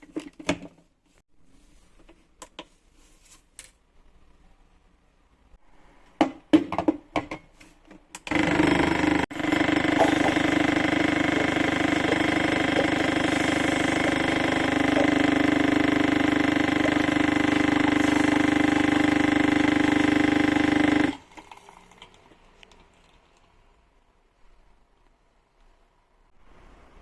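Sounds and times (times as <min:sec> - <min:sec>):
kitchen appliance motor running: 0:08.3 - 0:21.2.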